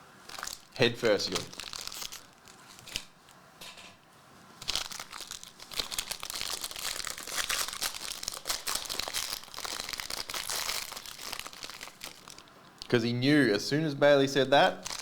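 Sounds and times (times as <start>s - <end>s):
plastic wrappers crinkling and tearing: 0.2s - 3.4s, 4.6s - 13.0s, 14.8s - 15.0s.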